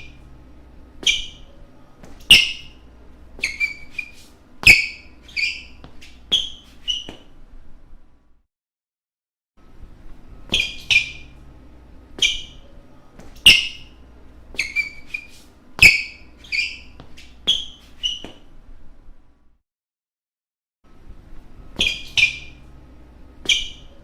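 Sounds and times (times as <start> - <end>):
shoes squeaking on court floor: 1.0 - 7.4, 10.4 - 11.5, 12.1 - 18.6, 21.7 - 22.8, 23.4 - 24.0.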